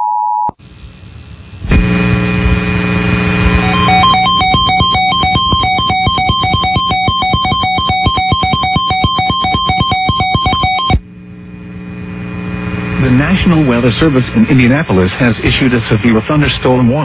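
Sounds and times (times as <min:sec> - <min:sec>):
low hum: 0:00.5 - 0:17.0
pulsing two-pitch electronic beeps: 0:03.6 - 0:11.0.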